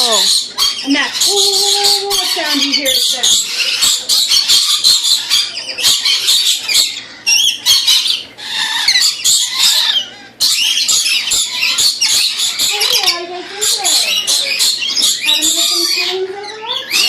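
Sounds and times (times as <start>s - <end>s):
lorikeets screeching: 0.0s - 17.0s.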